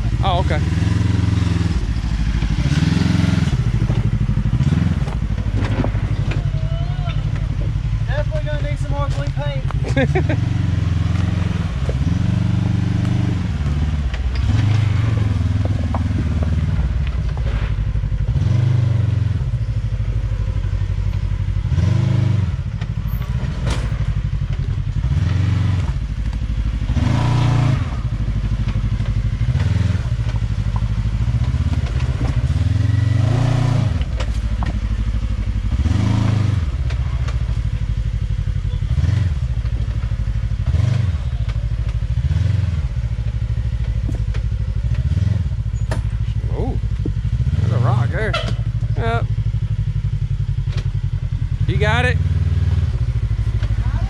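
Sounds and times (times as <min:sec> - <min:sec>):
utility vehicle engine revving: 0:00.0 - 0:54.0
vehicle bumping over rocks: 0:01.8 - 0:18.0, 0:22.7 - 0:26.6, 0:28.5 - 0:37.6, 0:38.8 - 0:42.5, 0:43.2 - 0:46.2.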